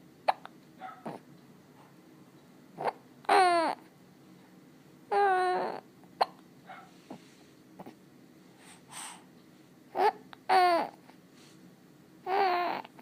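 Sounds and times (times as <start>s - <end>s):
baby hiccup: 0.2s - 1.2s, 6.2s - 6.4s
baby babbling: 2.8s - 3.8s, 5.1s - 6.4s, 10.0s - 11.0s, 12.2s - 13.0s
high-pitched baby calls: 2.8s - 3.8s, 5.1s - 6.4s, 9.9s - 11.0s, 12.2s - 13.0s.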